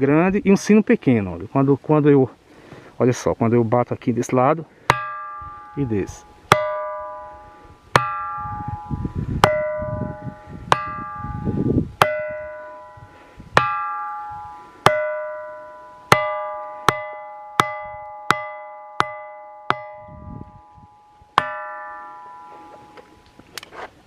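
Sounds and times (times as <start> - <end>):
stone knocking on ringing boulder: 4.9 - 5.7, 6.5 - 7.2, 7.9 - 10.0, 14.9 - 20.0.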